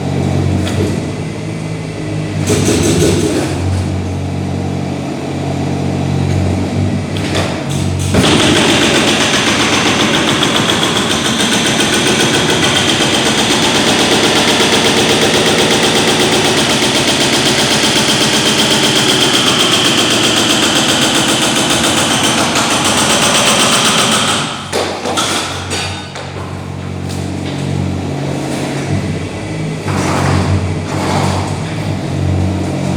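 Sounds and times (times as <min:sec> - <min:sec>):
demolition breaker hammering: 0:00.0 - 0:04.6, 0:05.4 - 0:32.9
diesel engine running: 0:00.0 - 0:24.8.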